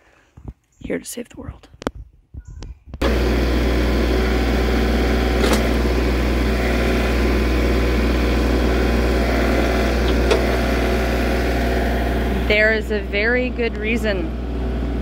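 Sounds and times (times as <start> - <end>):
machine engine running: 3.0 - 15.0.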